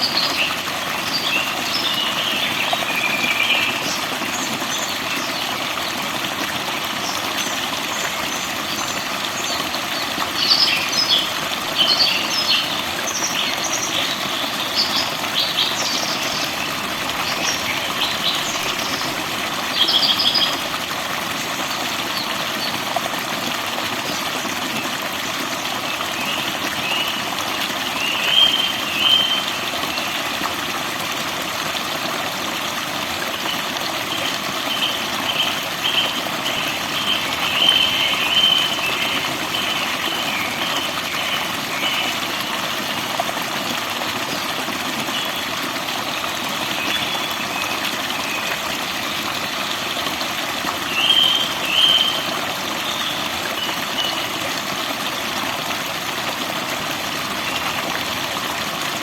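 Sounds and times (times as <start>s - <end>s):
forest birds chirping: 8.0s - 20.7s, 50.9s - 54.3s.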